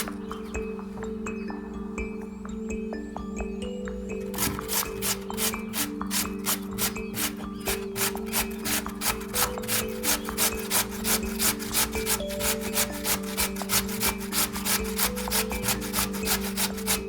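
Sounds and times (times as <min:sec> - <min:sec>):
background music: 0:00.0 - 0:17.0
potato scraping on grater: 0:04.3 - 0:17.0.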